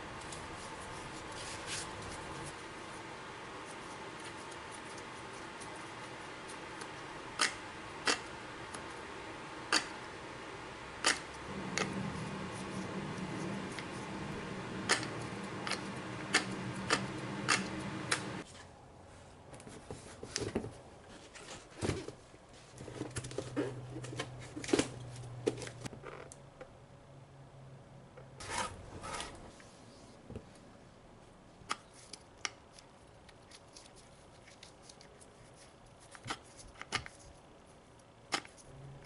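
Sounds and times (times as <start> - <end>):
steady low hum: 0.0 - 18.5.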